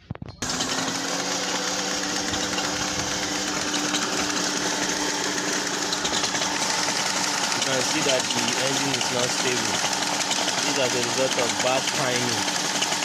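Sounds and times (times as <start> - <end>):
engine misfiring idle: 0.4 - 13.0.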